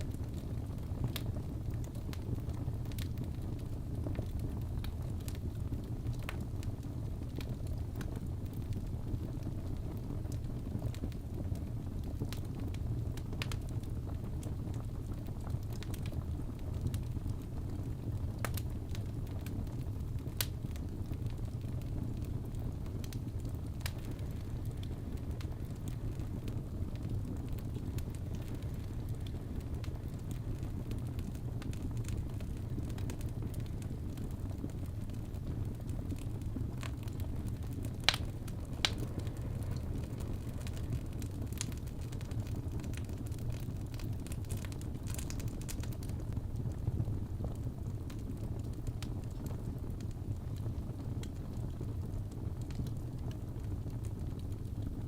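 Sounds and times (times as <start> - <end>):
low rumble of wind: 0.0 - 55.0
wood fire crackling: 0.0 - 55.0
sharp pops of fire: 18.3 - 46.4
low rumble: 36.4 - 42.0.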